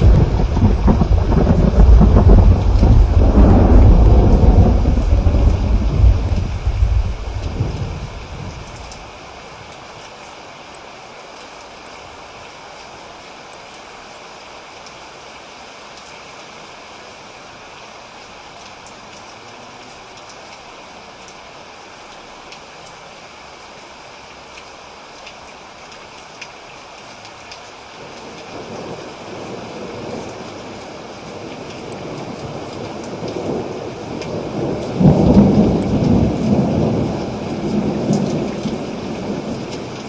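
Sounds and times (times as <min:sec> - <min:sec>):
thunder rumble: 0:00.0 - 0:09.2, 0:31.4 - 0:40.0
steady rain falling: 0:00.0 - 0:40.0
water drip clicks: 0:06.2 - 0:06.4, 0:35.7 - 0:36.4.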